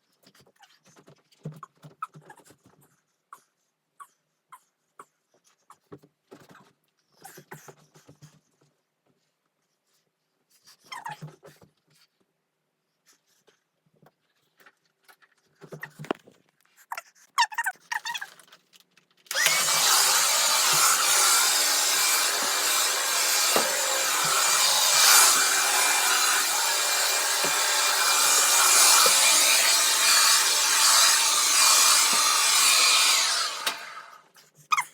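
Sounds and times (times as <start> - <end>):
motor-driven machine whining: 19.3 - 34.2.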